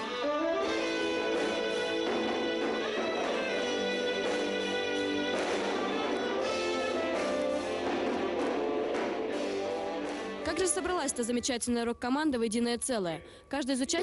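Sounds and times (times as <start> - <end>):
rock band music: 0.0 - 10.4.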